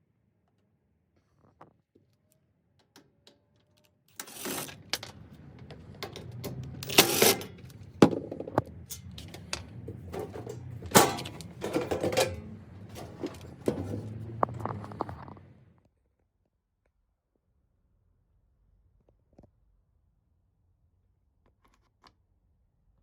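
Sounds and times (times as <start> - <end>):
mechanical clicking and knocking: 4.2 - 15.5.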